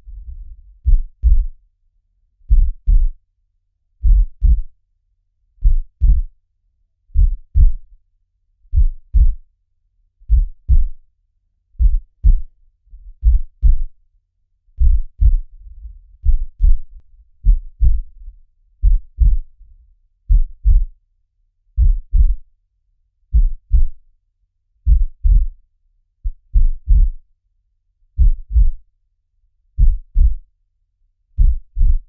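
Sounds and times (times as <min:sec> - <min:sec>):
slow heartbeat thumps: 0:00.0 - 0:01.6, 0:02.5 - 0:03.2, 0:04.0 - 0:04.7, 0:05.6 - 0:06.3, 0:07.2 - 0:07.9, 0:08.7 - 0:09.4, 0:10.2 - 0:11.0, 0:11.8 - 0:14.0, 0:14.8 - 0:19.7, 0:20.3 - 0:21.0, 0:21.8 - 0:22.5, 0:23.3 - 0:24.0, 0:24.9 - 0:25.6, 0:26.2 - 0:27.2, 0:28.2 - 0:28.8, 0:29.8 - 0:30.4, 0:31.4 - 0:32.0.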